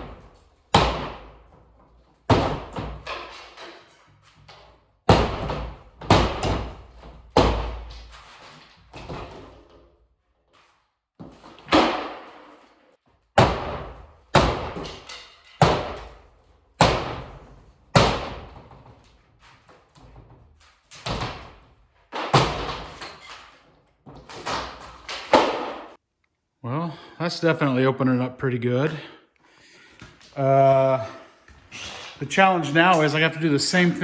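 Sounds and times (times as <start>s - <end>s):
sledgehammer striking wall panels: 0.0s - 10.0s, 10.6s - 26.0s.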